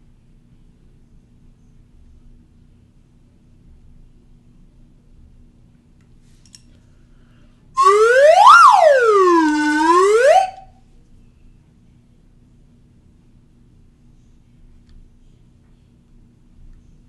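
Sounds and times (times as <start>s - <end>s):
slide whistle gliding: 7.8s - 10.7s.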